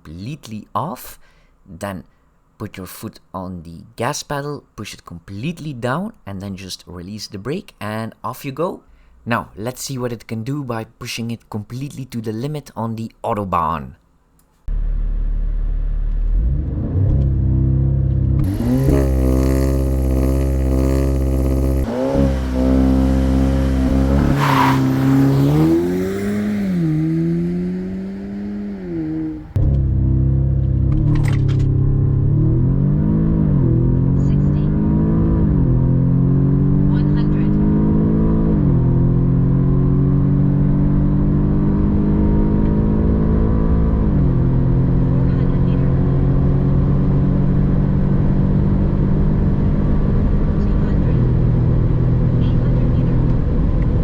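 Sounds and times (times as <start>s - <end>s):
gear changes: 14.4s - 54.0s
car engine accelerating hard: 14.7s - 54.0s.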